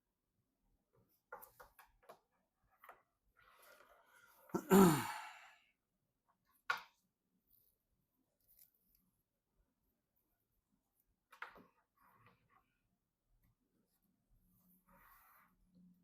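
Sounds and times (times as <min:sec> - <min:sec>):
person sighing: 0:04.6 - 0:05.6.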